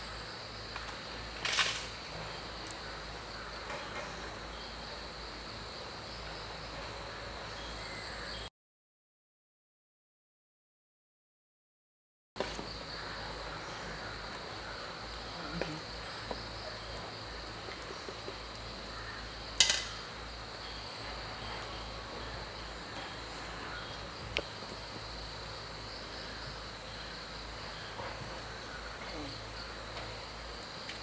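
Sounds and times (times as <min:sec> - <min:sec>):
insects trilling: 0:00.0 - 0:08.5, 0:12.4 - 0:31.0
sharp click: 0:19.6 - 0:20.0.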